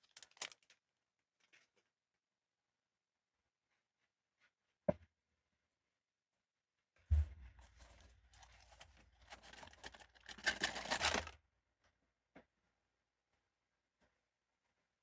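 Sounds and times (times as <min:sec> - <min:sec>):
packaging tearing and crinkling: 0:00.0 - 0:00.7, 0:08.4 - 0:11.4.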